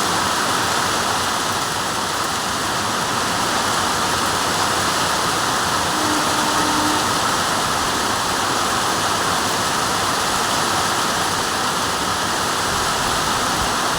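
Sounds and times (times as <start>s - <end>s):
faint short tone: 5.9s - 7.8s.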